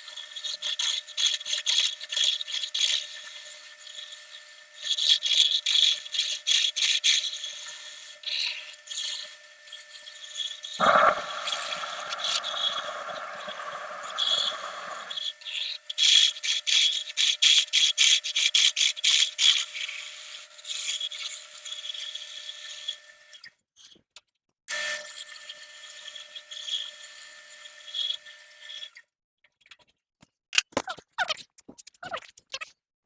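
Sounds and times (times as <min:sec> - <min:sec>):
wood lathe cutting wood: 0:10.8 - 0:15.2.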